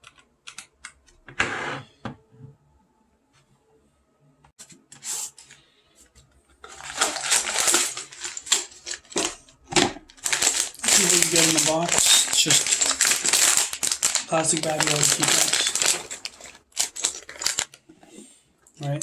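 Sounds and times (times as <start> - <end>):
plastic bag crinkling: 6.6 - 17.8
plastic keycaps clattering: 6.6 - 17.8.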